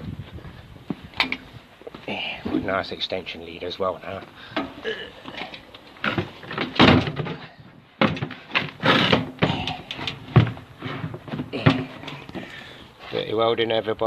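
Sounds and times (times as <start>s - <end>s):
equipment clattering: 4.0s - 12.7s
door knocks and bangs: 6.6s - 7.4s.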